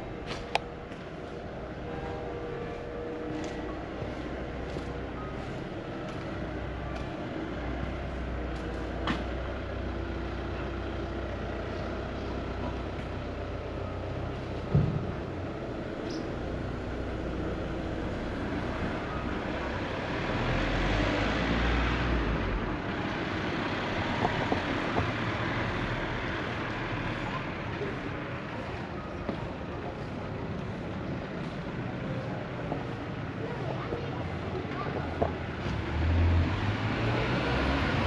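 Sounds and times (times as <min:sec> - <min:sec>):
low traffic rumble: 0:00.0 - 0:38.0
motor vehicle passing: 0:35.5 - 0:38.0.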